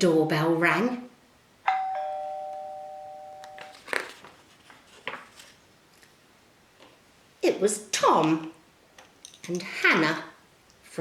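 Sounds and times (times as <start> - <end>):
two-note doorbell chime: 1.7 - 3.8.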